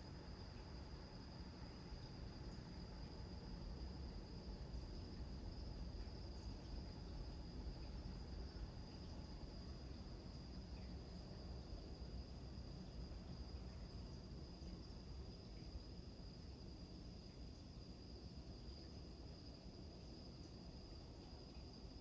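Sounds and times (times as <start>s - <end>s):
crickets chirping: 0.0s - 22.0s.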